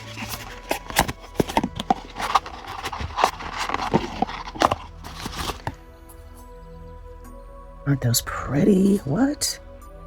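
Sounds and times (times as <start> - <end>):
packaging rustling: 0.0 - 5.8.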